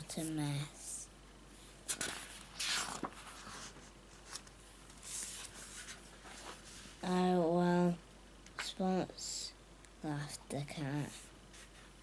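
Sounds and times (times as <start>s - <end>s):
book pages rustling: 1.9s - 7.0s.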